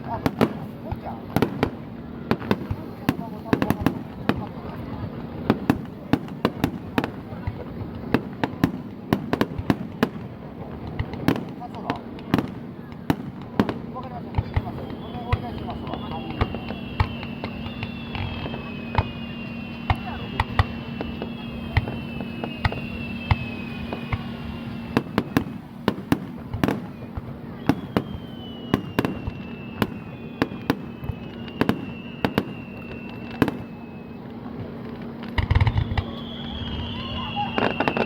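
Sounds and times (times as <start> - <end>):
fireworks bangs: 0.0 - 38.0
falling firework whistles: 1.3 - 10.2, 11.3 - 38.0.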